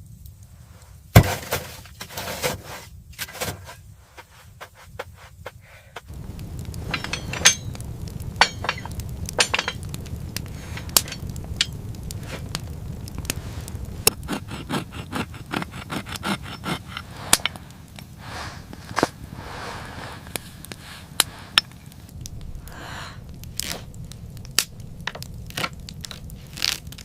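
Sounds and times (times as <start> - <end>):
sharp clicks and knocks: 6.0 - 17.6
low rumble: 6.1 - 27.0.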